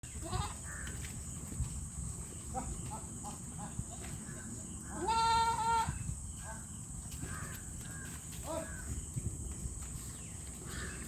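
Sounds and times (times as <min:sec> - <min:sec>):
goats bleating: 0:00.2 - 0:00.7, 0:04.9 - 0:05.9.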